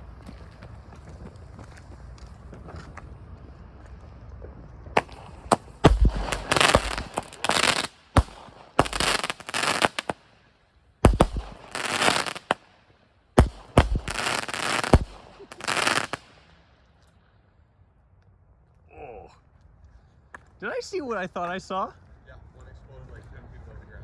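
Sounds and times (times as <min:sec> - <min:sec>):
firework bangs: 0:05.0 - 0:10.4, 0:11.0 - 0:12.8, 0:13.4 - 0:16.6
firework hissing and crackling: 0:05.0 - 0:10.4, 0:11.0 - 0:12.7, 0:13.4 - 0:16.5.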